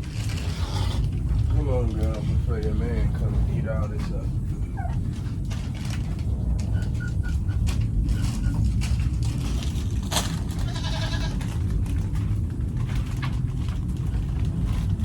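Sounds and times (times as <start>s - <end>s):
steady low rumble: 0.0s - 15.0s
goat bleating: 10.6s - 11.4s.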